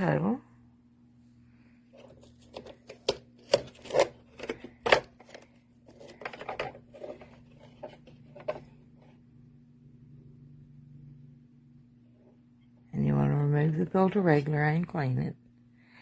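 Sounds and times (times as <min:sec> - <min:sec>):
faint steady hum: 0:00.0 - 0:16.0
plastic parts clicking and knocking: 0:02.0 - 0:08.8.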